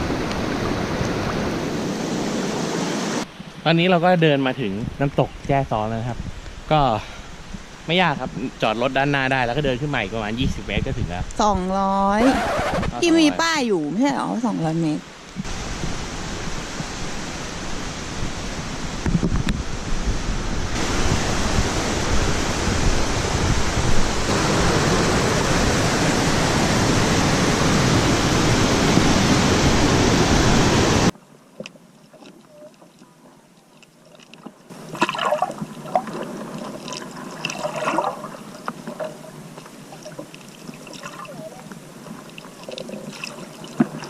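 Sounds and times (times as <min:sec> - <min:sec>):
waterfall rushing: 0:00.0 - 0:03.3, 0:15.4 - 0:31.1
trickling water: 0:31.1 - 0:44.0
small water splashes: 0:31.5 - 0:44.0.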